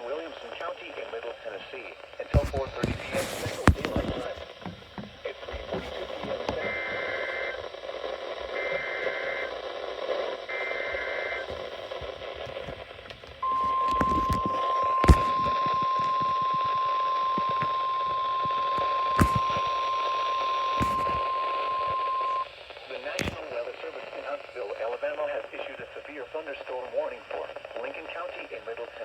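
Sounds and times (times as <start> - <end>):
receiver hiss: 0.0 - 29.0
static pops: 0.0 - 29.0
steady warning alarm tone: 2.8 - 7.6, 13.4 - 22.5.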